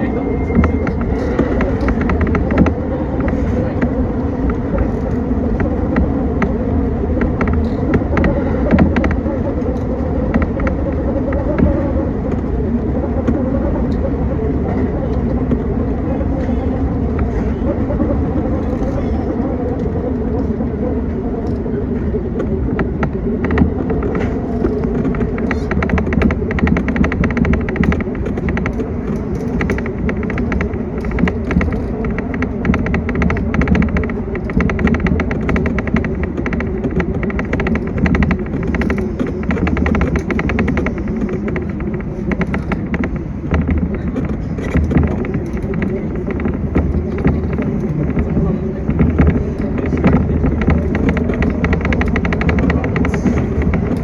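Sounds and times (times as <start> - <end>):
constant hum: 0.0 - 54.0
train wheels rumbling on rail: 0.0 - 54.0
quick clicks and rattles: 22.8 - 54.0.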